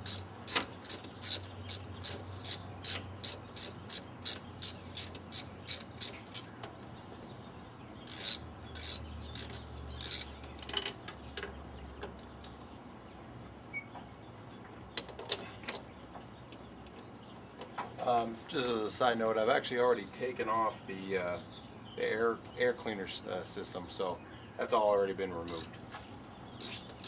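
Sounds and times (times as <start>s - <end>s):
socket ratchet clicking: 0.0s - 6.5s, 8.1s - 11.0s.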